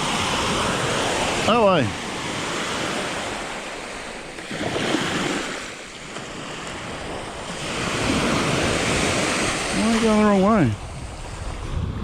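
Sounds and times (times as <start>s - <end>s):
ocean surf on beach: 0.0s - 12.0s
wind on microphone: 4.5s - 5.6s, 6.3s - 12.0s.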